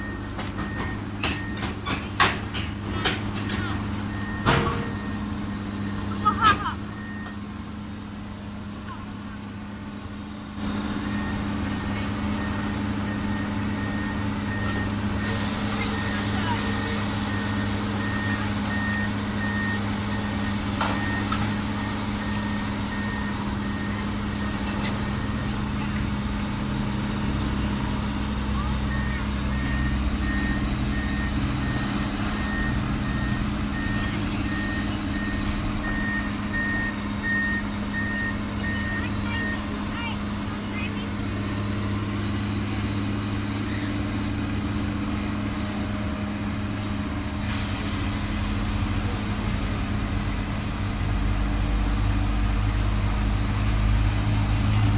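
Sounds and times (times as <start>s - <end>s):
backup alarm beeping: 0.0s - 1.9s, 3.0s - 7.5s, 10.6s - 26.0s, 28.5s - 42.1s
diesel engine running: 0.0s - 54.9s.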